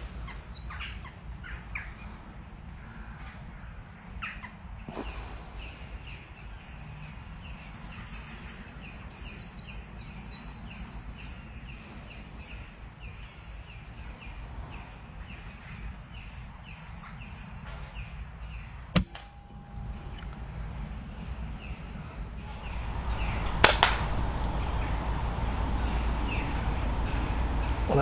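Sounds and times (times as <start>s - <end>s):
birds chirping: 0.0s - 19.5s, 22.4s - 28.0s
air rifle firing: 19.0s - 19.4s, 22.5s - 27.1s.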